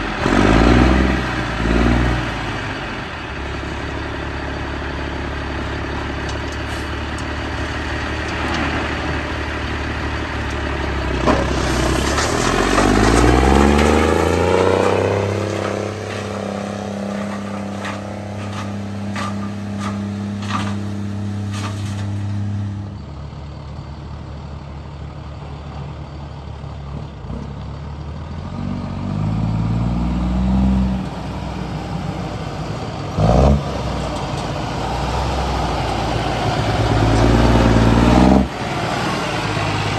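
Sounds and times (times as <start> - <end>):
engine clattering: 0.0 - 22.8
diesel engine revving: 0.0 - 39.9.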